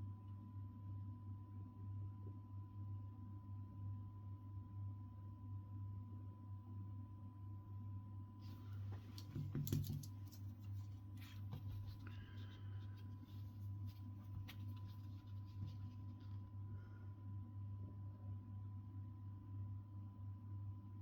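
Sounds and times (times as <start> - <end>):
scratching and clicking handling noise: 8.4 - 16.4.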